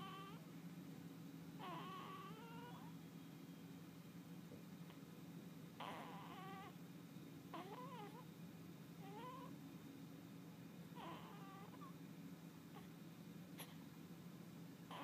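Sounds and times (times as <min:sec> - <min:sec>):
newborn baby whimpering: 0:00.0 - 0:00.4, 0:01.6 - 0:02.9, 0:05.8 - 0:06.8, 0:07.5 - 0:08.3, 0:09.0 - 0:09.5, 0:11.0 - 0:12.0
low steady hum: 0:00.0 - 0:15.0.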